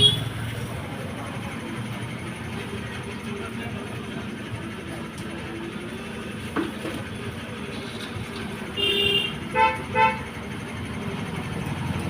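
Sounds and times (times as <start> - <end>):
vehicle horn beeping: 0.0 - 0.4, 8.7 - 10.3
traffic rumble: 0.0 - 12.0.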